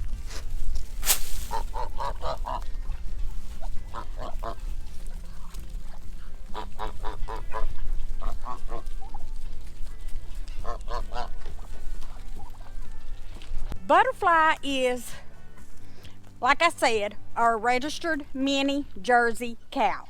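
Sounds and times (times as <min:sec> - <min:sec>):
geese honking: 0:01.3 - 0:13.7.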